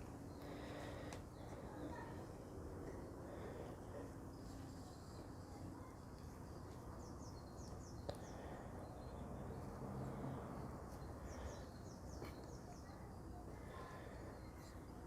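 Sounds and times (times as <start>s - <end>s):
small bird chirping: 4.3s - 9.8s.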